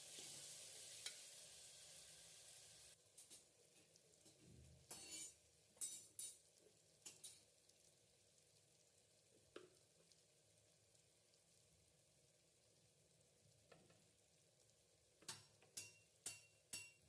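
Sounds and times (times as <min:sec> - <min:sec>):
low hiss: 0:00.0 - 0:16.7
spoon scraping frying pan: 0:03.2 - 0:07.5.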